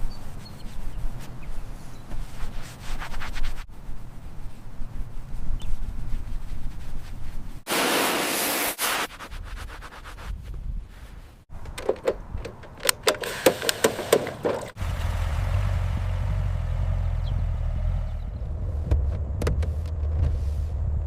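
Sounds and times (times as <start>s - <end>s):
short burst of hiss: 7.7s - 9.1s
sharp clicks and knocks: 11.5s - 14.8s
car engine running: 14.7s - 20.7s.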